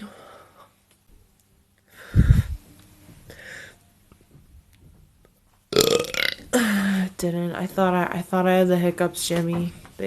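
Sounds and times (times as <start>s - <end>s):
woman breathing sharply: 1.9s - 2.6s, 3.3s - 3.9s
loud burp: 5.7s - 6.6s.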